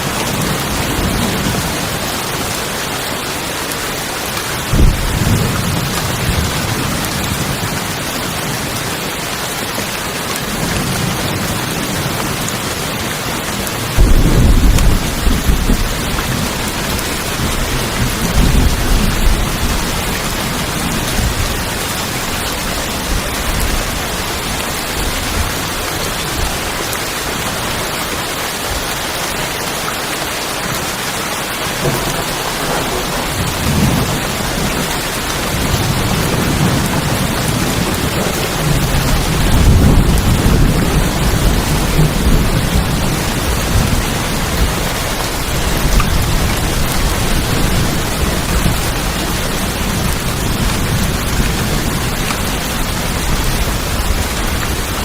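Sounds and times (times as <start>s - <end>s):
rain on a tin roof: 0.0s - 55.0s
thunder rumbling: 4.6s - 8.9s, 10.5s - 26.6s, 31.8s - 55.0s.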